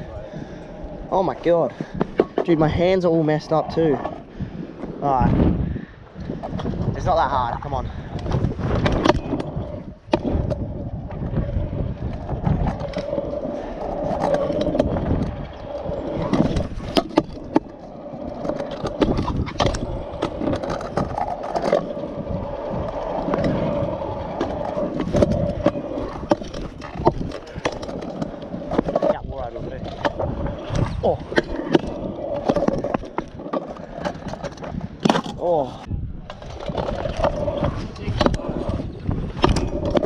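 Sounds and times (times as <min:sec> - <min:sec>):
scooter wheels rolling on concrete: 0:00.0 - 0:40.0.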